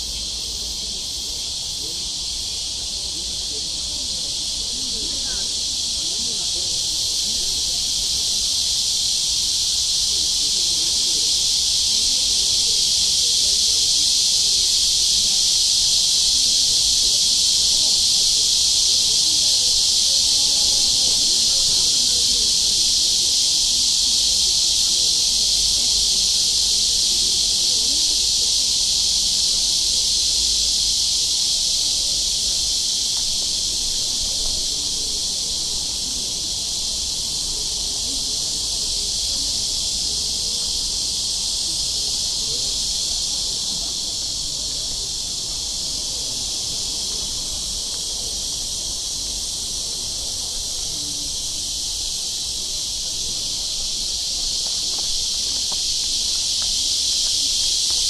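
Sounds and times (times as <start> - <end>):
cicadas chorus: 0.0 - 58.0.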